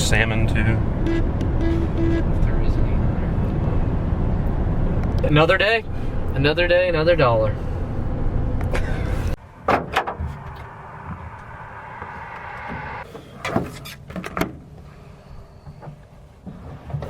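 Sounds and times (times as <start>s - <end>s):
car cabin road rumble: 0.0s - 13.0s
car doors clunking shut: 9.6s - 10.5s.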